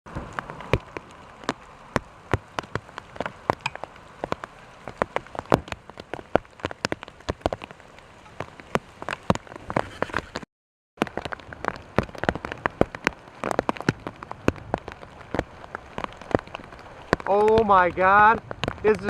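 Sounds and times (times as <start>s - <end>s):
heavy rain pelting down: 0.1s - 10.4s, 11.0s - 19.0s.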